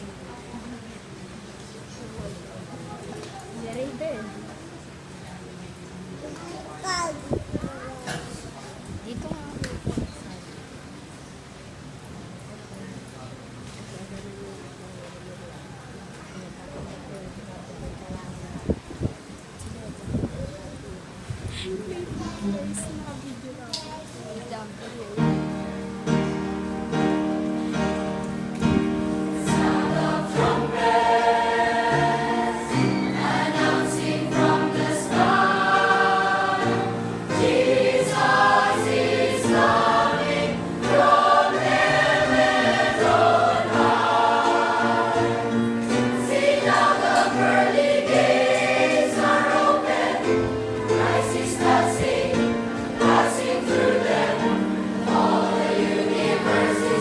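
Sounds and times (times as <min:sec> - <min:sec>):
choir singing a hymn: 0:26.0 - 0:57.0.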